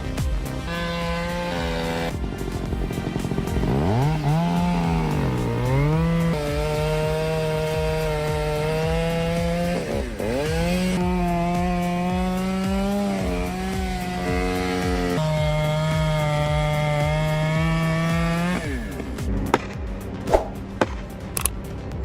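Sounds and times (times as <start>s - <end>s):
chainsaw cutting into tree: 0.0s - 19.8s.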